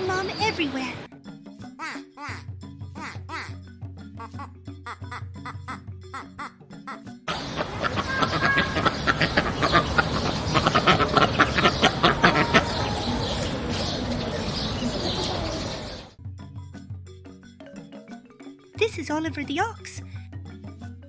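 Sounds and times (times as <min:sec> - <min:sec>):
ducks quacking: 0:07.3 - 0:16.2.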